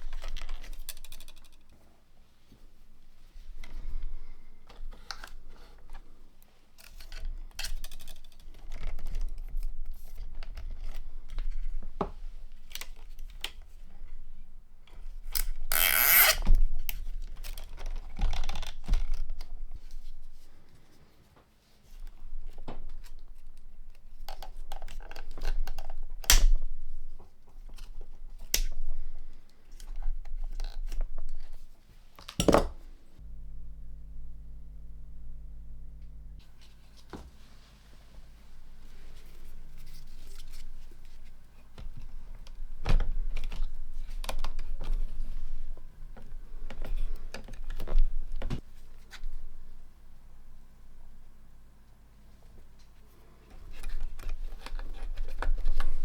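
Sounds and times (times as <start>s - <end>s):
small tools clicking and scraping: 15.3s - 16.5s.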